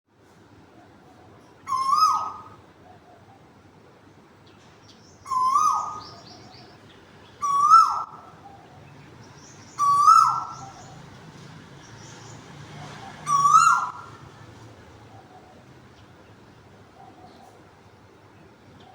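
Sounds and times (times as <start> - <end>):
cuckoo calling: 1.6 - 3.5, 5.2 - 11.1, 12.0 - 16.2.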